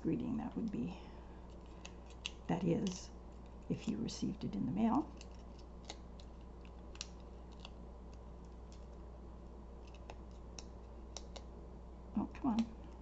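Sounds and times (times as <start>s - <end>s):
low steady hum: 0.0s - 13.0s
cardstock clicks and taps: 9.9s - 11.5s.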